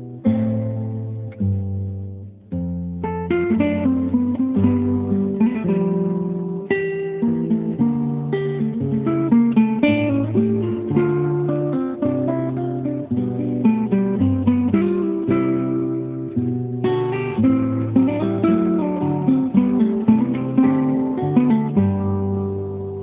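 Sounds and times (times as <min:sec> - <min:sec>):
acoustic guitar plucked notes: 0:00.0 - 0:23.0.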